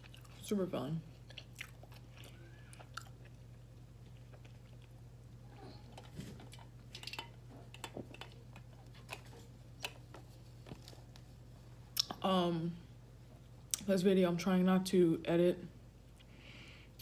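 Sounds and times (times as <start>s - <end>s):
faint close-up chewing: 0.0s - 0.4s, 1.1s - 12.2s
steady low hum: 0.0s - 17.0s.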